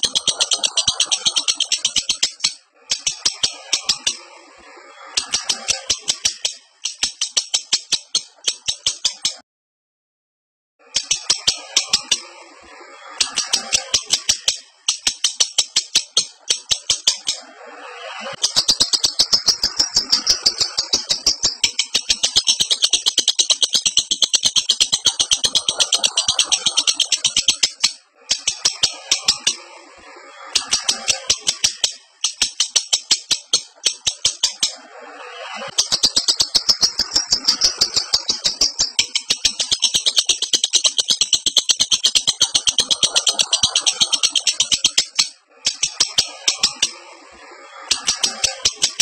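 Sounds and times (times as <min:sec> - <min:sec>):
lovebird chattering call: 0:00.0 - 0:04.2, 0:05.2 - 0:09.4, 0:11.0 - 0:12.3, 0:13.2 - 0:29.6, 0:35.4 - 0:46.9.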